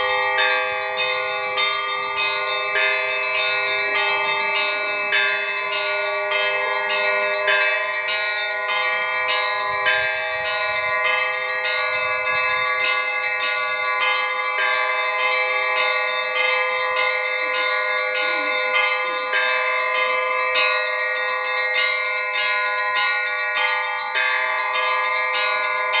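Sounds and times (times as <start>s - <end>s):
church bells ringing: 0.0s - 26.0s.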